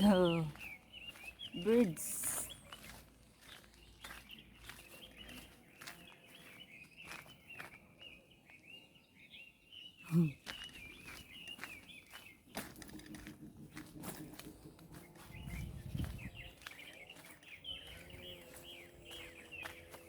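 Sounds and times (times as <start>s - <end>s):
birds twittering: 0.0s - 20.0s.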